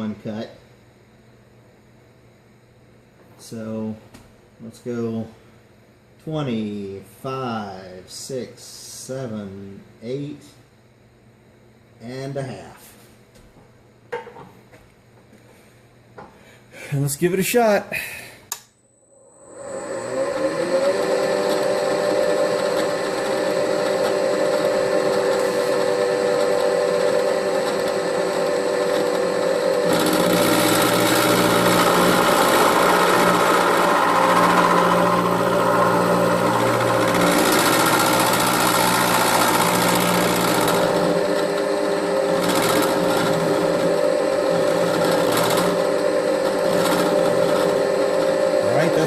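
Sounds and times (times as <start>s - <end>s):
milling machine motor whine: 19.0s - 49.0s
cutter milling metal: 19.5s - 49.0s.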